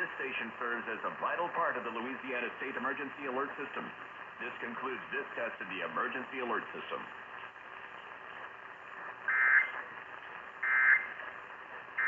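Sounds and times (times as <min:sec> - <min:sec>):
radio hiss: 0:00.0 - 0:12.0
short buzzing data bursts: 0:09.2 - 0:09.9, 0:10.6 - 0:11.2.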